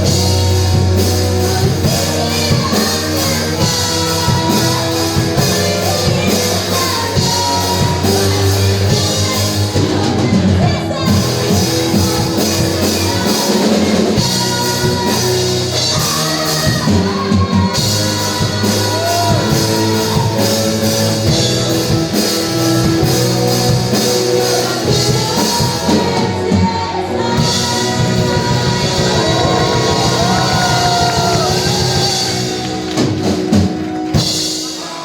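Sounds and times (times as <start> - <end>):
lead singer singing: 0.0 - 35.0
live rock band playing: 0.0 - 35.0.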